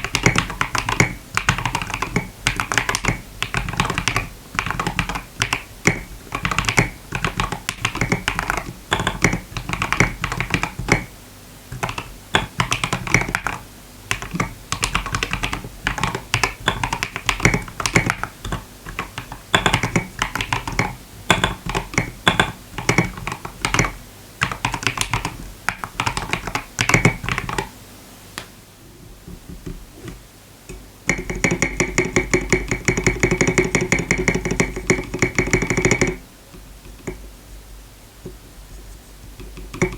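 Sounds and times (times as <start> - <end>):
mechanical keyboard typing: 0.0 - 11.1, 11.7 - 27.7, 31.1 - 36.2, 39.4 - 39.9.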